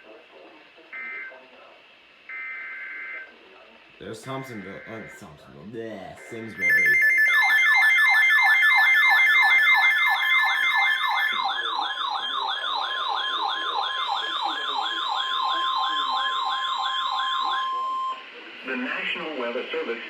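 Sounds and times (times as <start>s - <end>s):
steady warning alarm tone: 2.3s - 3.4s, 4.0s - 18.4s
rapid high beeping: 4.0s - 5.4s, 6.0s - 18.2s
siren-like sweeping tone: 6.6s - 18.2s.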